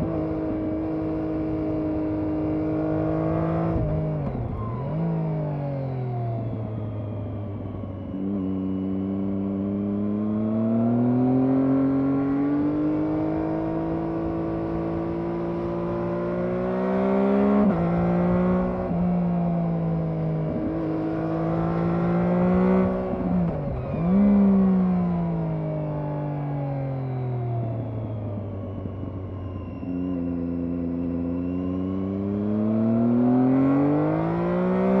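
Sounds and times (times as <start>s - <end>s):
motorcycle engine revving: 8.0s - 25.6s, 29.9s - 35.0s.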